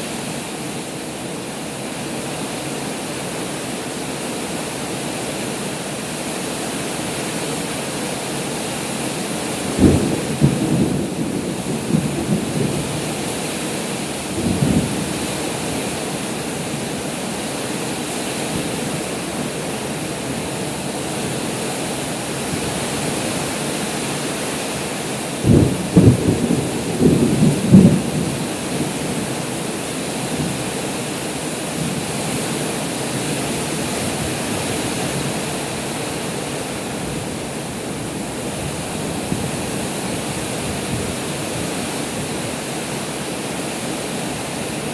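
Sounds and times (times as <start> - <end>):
heavy rain pouring: 0.0 - 44.9
rumbling thunder: 9.7 - 13.4, 14.3 - 15.2, 25.4 - 29.1.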